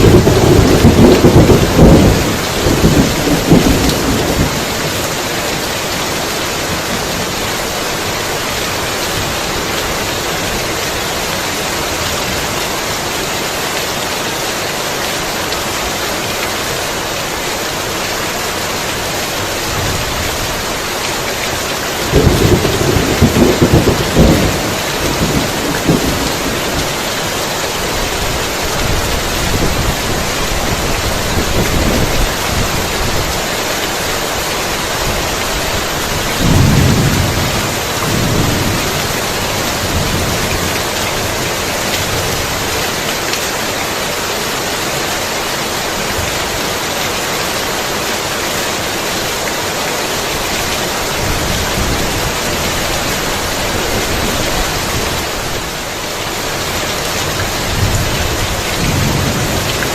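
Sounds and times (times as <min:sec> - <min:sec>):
thunder crackling and rumbling: 0:00.0 - 0:05.2, 0:22.0 - 0:27.1, 0:34.9 - 0:42.7, 0:57.2 - 0:59.9
heavy rain falling: 0:00.0 - 0:59.9.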